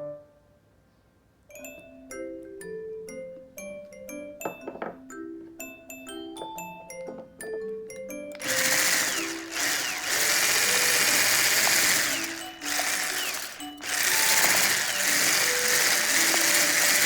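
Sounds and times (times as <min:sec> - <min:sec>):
marimba-like background music: 0:01.5 - 0:09.2
electric hand mixer running: 0:08.4 - 0:17.0.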